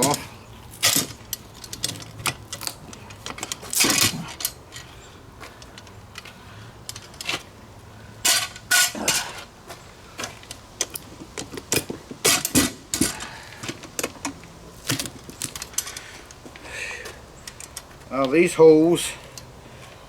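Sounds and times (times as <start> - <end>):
clicks and knocks of hardware: 0.8 - 4.9.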